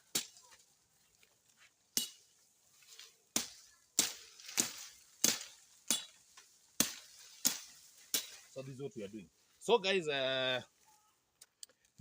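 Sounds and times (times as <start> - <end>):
blade chopping tree branches: 0.0 - 0.5, 1.9 - 8.6.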